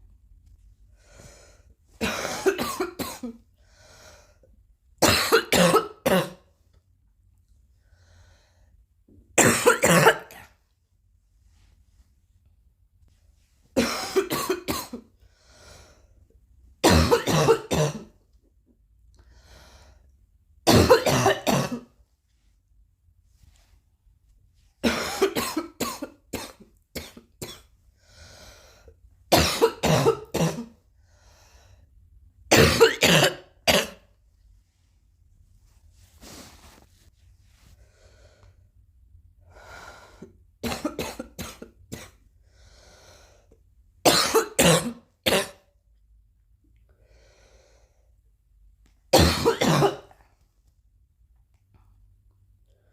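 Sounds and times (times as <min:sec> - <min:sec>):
harsh coughing: 0:02.0 - 0:03.4, 0:05.0 - 0:06.5, 0:09.4 - 0:10.6, 0:13.8 - 0:15.1, 0:16.8 - 0:18.2, 0:20.6 - 0:21.9, 0:24.8 - 0:27.7, 0:29.3 - 0:30.8, 0:32.5 - 0:34.1, 0:40.6 - 0:42.2, 0:44.0 - 0:45.7, 0:49.1 - 0:50.2.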